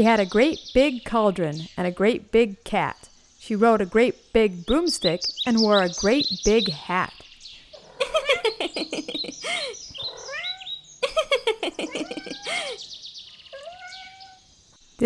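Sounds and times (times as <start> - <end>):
birds chirping and whistling: 2.6 - 14.6.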